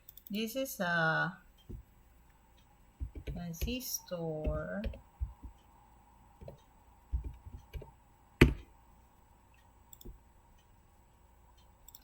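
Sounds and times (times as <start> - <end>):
faint steady hum: 0.0 - 12.0
mouse and keyboard clicks: 3.0 - 3.8, 6.4 - 8.7.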